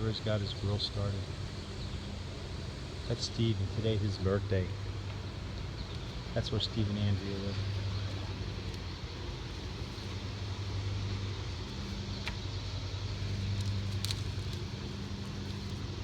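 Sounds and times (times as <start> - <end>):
outdoor background noise: 0.0 - 16.0
steady low motor hum: 0.0 - 16.0
faint ticks: 11.7 - 16.0.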